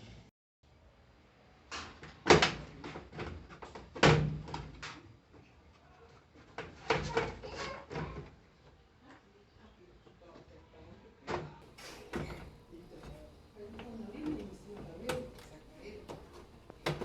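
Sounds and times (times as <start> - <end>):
washing machine parts clattering: 11.6 - 17.0.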